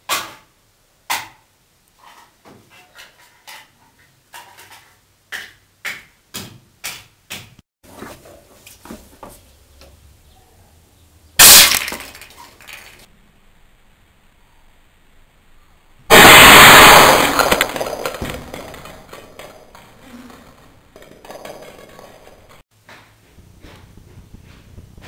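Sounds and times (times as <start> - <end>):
air rifle blast: 11.4 - 11.9, 16.1 - 18.6.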